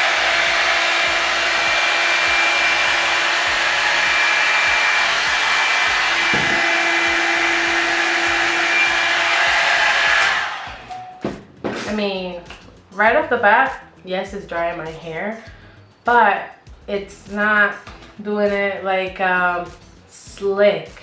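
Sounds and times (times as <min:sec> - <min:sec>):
hair dryer running: 0:00.0 - 0:10.9.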